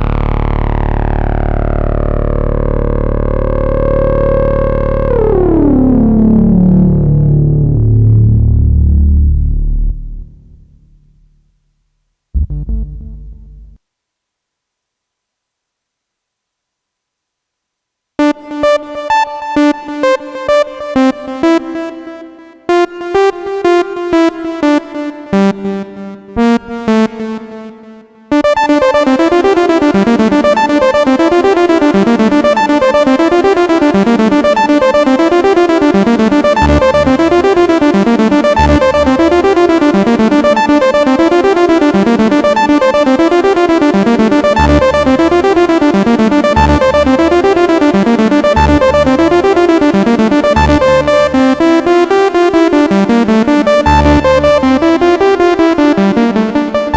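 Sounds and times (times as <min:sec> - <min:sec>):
synthesizer chords: 0:00.0 - 0:11.4, 0:12.4 - 0:13.8, 0:28.4 - 0:56.9
synthesizer bass notes: 0:00.0 - 0:11.5, 0:12.4 - 0:13.8, 0:35.2 - 0:56.9
synthesizer arpeggio: 0:12.4 - 0:13.8, 0:28.5 - 0:56.9.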